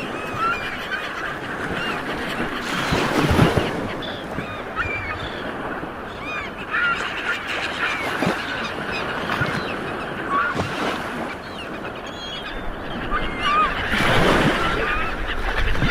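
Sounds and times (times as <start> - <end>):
flock of birds calling: 0.0 - 15.9
sea water rushing: 0.0 - 15.9.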